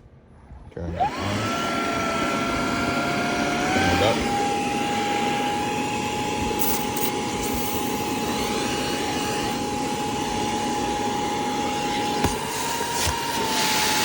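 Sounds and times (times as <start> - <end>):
vacuum suction motor whining: 0.8 - 14.0.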